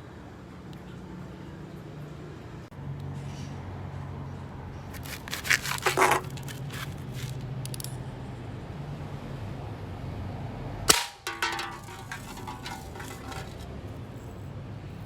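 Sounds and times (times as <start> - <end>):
cap gun scraping and clicking: 4.9 - 8.0, 10.9 - 13.6
cap gun crack: 10.9 - 13.4
metallic ring: 11.0 - 13.6.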